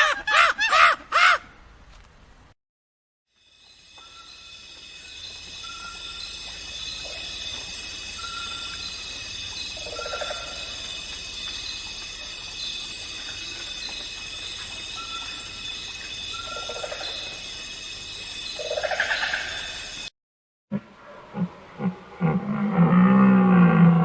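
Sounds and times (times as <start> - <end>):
high insect-like drone: 3.4 - 20.1
bird chirps: 3.5 - 20.1.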